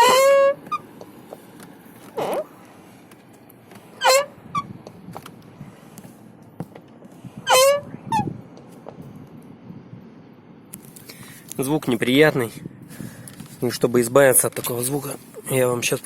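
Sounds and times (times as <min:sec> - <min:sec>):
car door squeaking: 0:00.0 - 0:01.1, 0:02.0 - 0:02.5, 0:03.8 - 0:05.1, 0:06.9 - 0:08.6.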